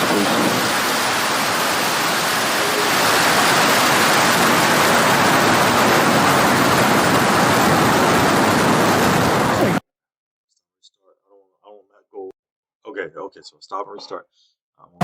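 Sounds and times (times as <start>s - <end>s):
rocket engine roar: 0.0s - 9.8s.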